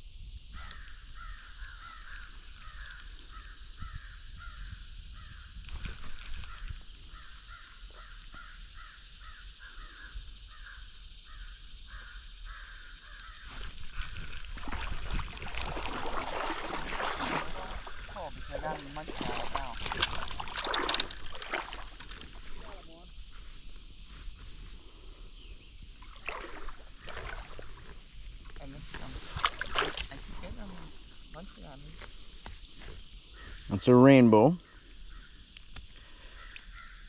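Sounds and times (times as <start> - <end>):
water splashing: 13.5 - 23.8, 25.8 - 33.5.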